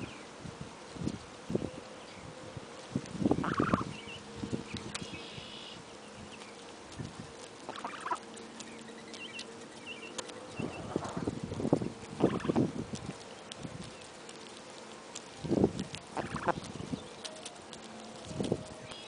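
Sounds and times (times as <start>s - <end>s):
scratching and pecking: 2.7s - 19.0s
goose honking: 3.4s - 3.9s, 7.6s - 8.3s, 16.1s - 16.6s
high peeps: 3.4s - 4.2s, 7.7s - 8.2s, 12.2s - 12.6s, 16.2s - 17.7s.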